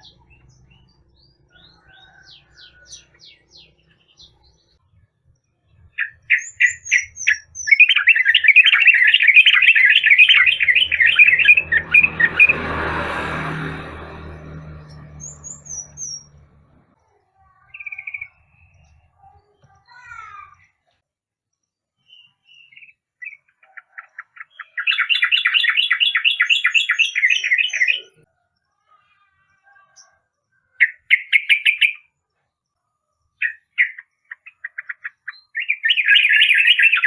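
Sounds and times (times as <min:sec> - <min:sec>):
bird singing bubbly chatter: 0:05.7 - 0:12.5, 0:33.4 - 0:37.0.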